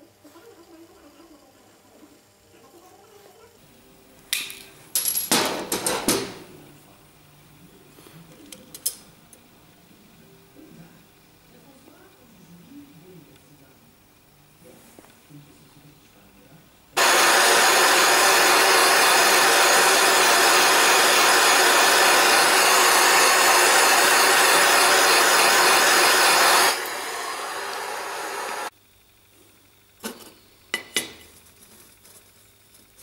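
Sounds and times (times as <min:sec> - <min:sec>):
electric tool motor whirring: 0:17.0 - 0:28.7.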